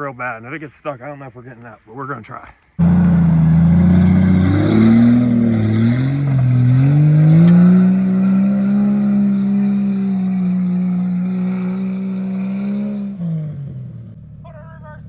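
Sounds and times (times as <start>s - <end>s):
engine revving under load: 2.8s - 14.2s.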